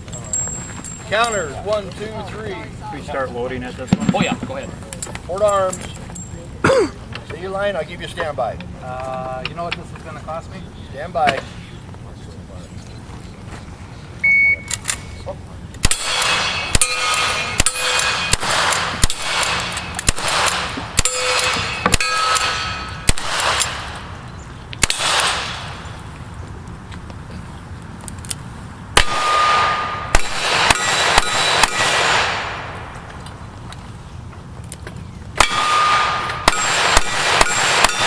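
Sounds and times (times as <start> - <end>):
steel targets ringing: 0.0 - 1.7, 3.8 - 4.8, 15.9 - 19.7, 21.0 - 23.2, 30.7 - 32.0, 35.4 - 38.0
rifle shots: 3.9 - 4.7, 15.8 - 24.0, 24.8 - 25.8, 29.0 - 32.8, 35.4 - 38.0
shot timer beep: 14.2 - 15.2.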